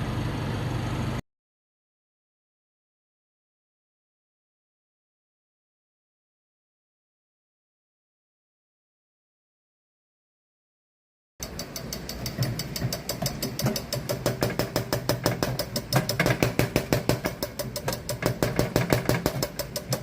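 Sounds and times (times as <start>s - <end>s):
diesel engine starting: 0.0s - 1.2s, 11.4s - 16.6s.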